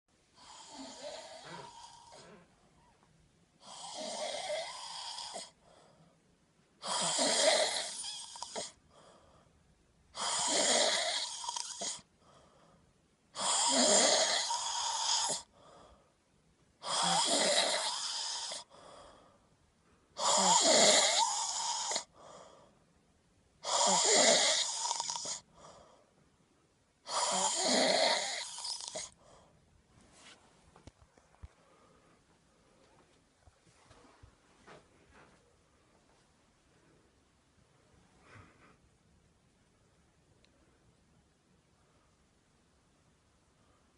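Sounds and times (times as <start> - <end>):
person snoring: 0.4 - 2.5, 3.6 - 5.6, 6.8 - 8.8, 10.2 - 12.1, 13.4 - 15.5, 16.8 - 18.8, 20.2 - 22.2, 23.6 - 25.5, 27.0 - 29.2.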